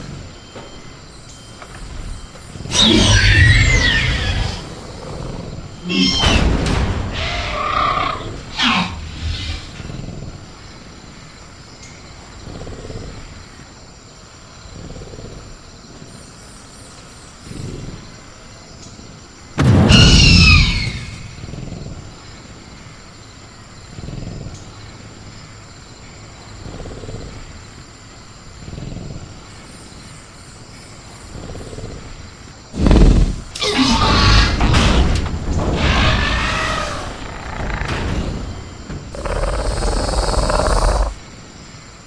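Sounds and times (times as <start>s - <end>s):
crickets chirring: 0.0s - 42.0s
screeching roar: 2.7s - 10.0s, 32.8s - 41.2s
creature low growls: 32.8s - 34.7s, 35.8s - 41.3s.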